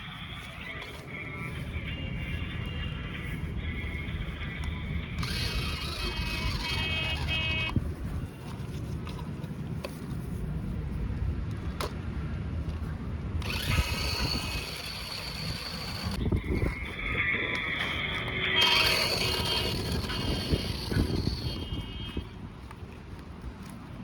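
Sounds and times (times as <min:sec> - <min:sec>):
steady low rumble: 0:00.0 - 0:06.5
small electric motor whirring: 0:05.1 - 0:07.8, 0:13.4 - 0:22.3.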